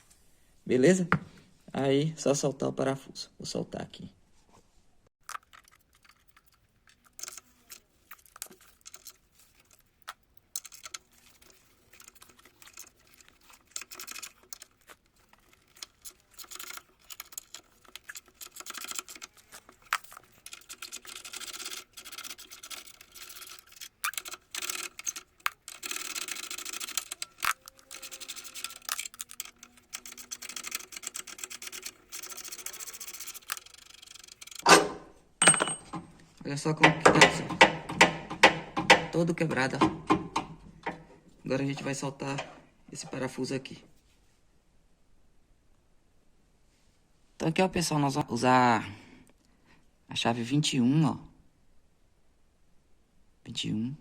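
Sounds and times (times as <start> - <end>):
wrench clicking and scraping: 5.2 - 34.6.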